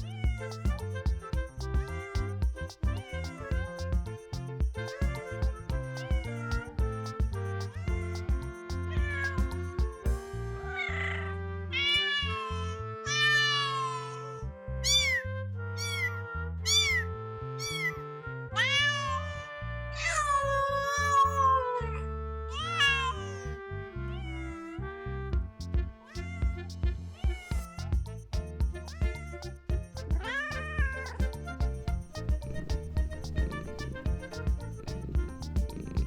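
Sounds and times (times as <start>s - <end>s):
kittens meowing: 0.0s - 0.9s, 9.0s - 10.0s, 16.7s - 17.0s, 30.2s - 31.4s
background music: 0.0s - 36.0s.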